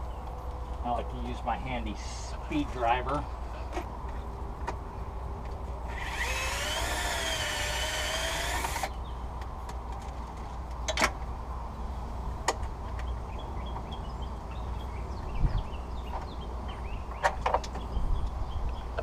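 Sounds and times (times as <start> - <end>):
power driver motor whine: 5.9 - 8.9.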